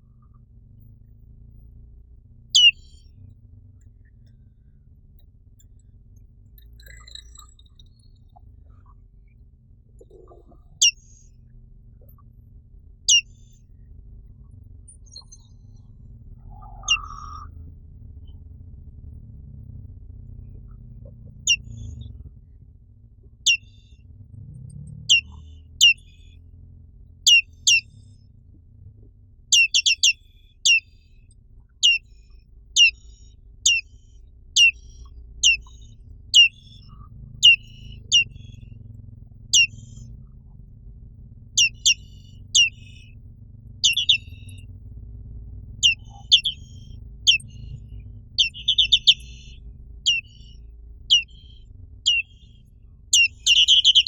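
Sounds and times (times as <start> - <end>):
faint low hum: 0.0 - 54.0
bird chirps falling in pitch: 2.6 - 3.0, 16.7 - 17.4, 23.5 - 23.8, 25.1 - 26.2, 27.3 - 27.9, 29.5 - 30.9, 31.8 - 32.1, 32.8 - 33.1, 34.6 - 36.8, 37.4 - 38.6, 41.6 - 42.9, 43.8 - 44.6, 45.8 - 47.8, 48.4 - 52.5, 53.2 - 54.0.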